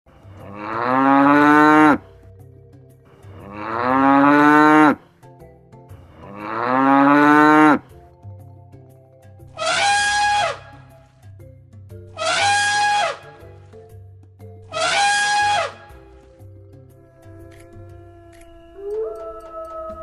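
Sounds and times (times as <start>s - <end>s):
cow mooing: 0.3s - 2.1s, 3.3s - 5.0s, 6.2s - 7.9s, 9.6s - 10.8s, 12.2s - 13.4s, 14.7s - 16.0s.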